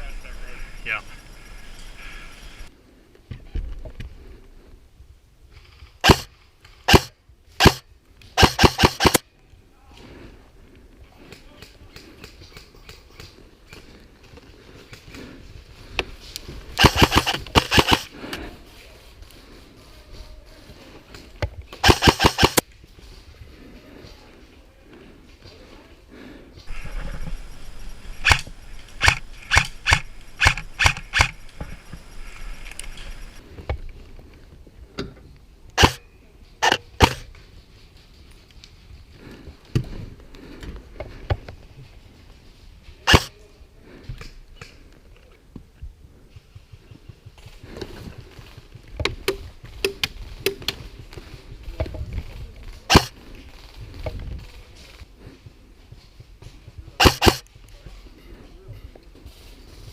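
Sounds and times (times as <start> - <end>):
airsoft gun firing: 6.0 - 6.3, 6.9 - 7.8, 8.4 - 9.2, 16.8 - 18.1, 21.8 - 22.6, 28.2 - 31.6, 35.8 - 36.0, 43.1 - 43.3, 52.9 - 53.1, 57.0 - 57.4.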